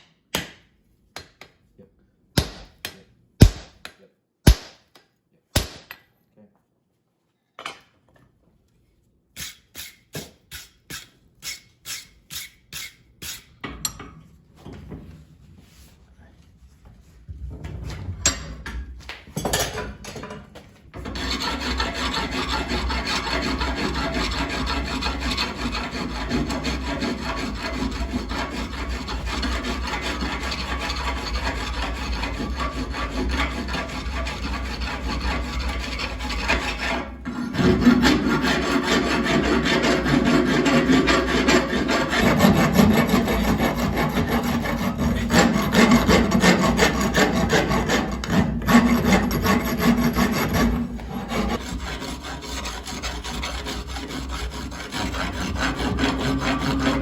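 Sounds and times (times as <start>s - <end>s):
abrasive rubbing on steel: 9.4s - 13.6s.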